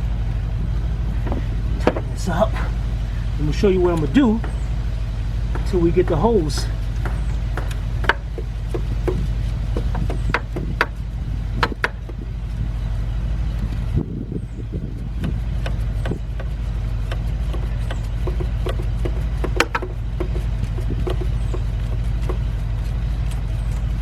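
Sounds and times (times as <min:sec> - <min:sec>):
steady low hum: 0:00.0 - 0:24.0
metal tool knocks: 0:01.2 - 0:02.2.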